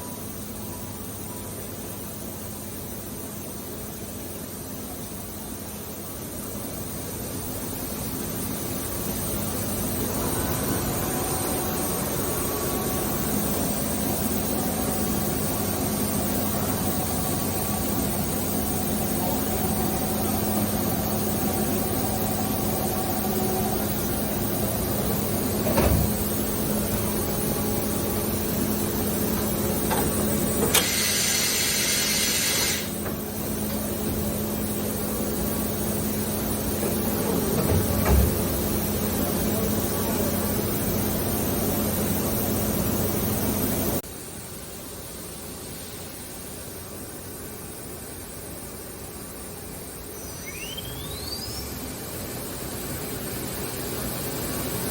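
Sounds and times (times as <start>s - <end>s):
machine mechanical hum: 0.0s - 54.9s
loud hiss: 8.1s - 37.2s.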